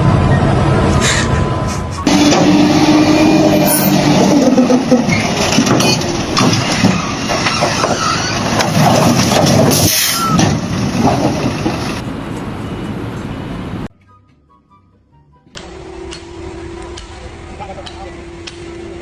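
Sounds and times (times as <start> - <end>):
heavy machinery running: 2.0 - 9.7
knocks and clatter: 4.4 - 12.0.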